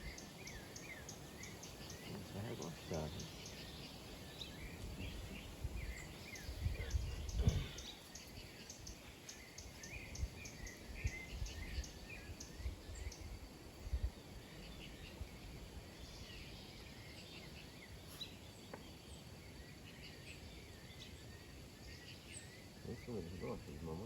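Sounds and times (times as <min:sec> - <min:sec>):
small birds chirping: 0:00.0 - 0:24.0
low thumps: 0:06.5 - 0:07.8.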